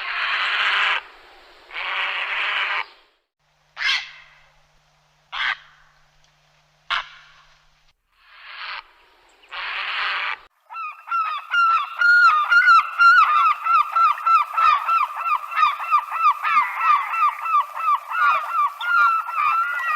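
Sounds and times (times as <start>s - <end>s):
rapid animal calls: 8.2s - 19.9s.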